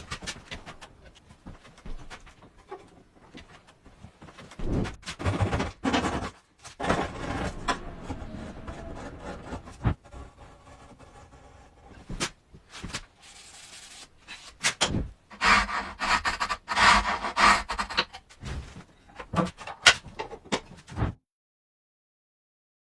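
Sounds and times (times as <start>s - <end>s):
hand tools rasping wood: 15.3s - 18.1s.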